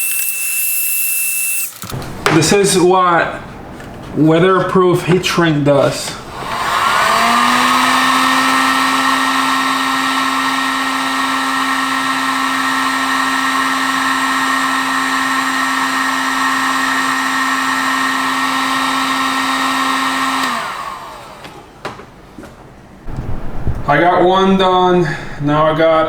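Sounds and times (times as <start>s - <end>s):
heat gun blowing with motor whine: 0.0s - 2.0s, 6.3s - 21.8s.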